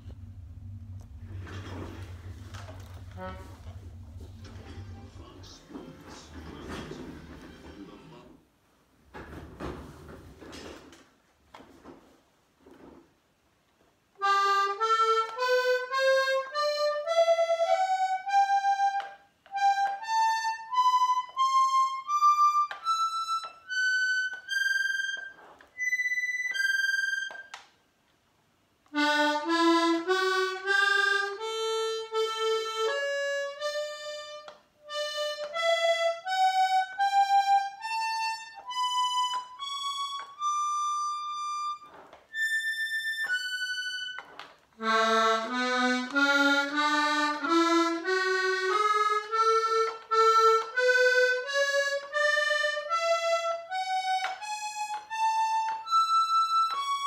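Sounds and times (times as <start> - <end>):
button accordion notes climbing: 0.0 - 6.7, 14.2 - 27.7, 28.9 - 57.0.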